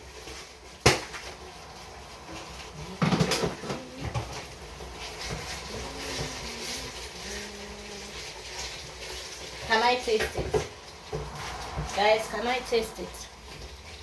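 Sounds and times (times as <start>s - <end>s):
pot and utensil clatter: 0.1s - 11.3s.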